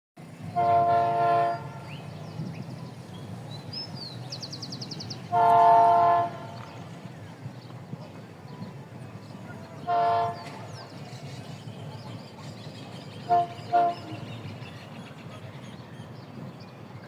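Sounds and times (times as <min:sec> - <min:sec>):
diesel engines rumbling: 0:00.2 - 0:17.0
locomotive air horn blasts: 0:00.4 - 0:02.1, 0:05.3 - 0:06.7, 0:09.8 - 0:10.7, 0:13.2 - 0:14.4.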